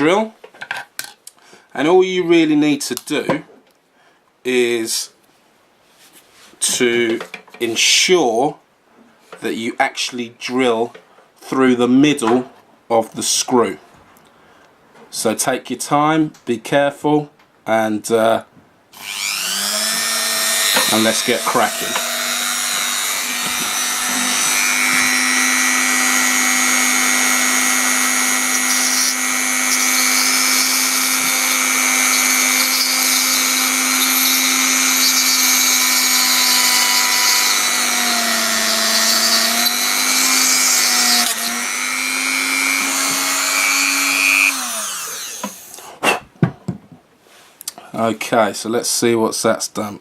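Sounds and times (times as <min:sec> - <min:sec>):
rotary tool whining: 0:19.0 - 0:45.8.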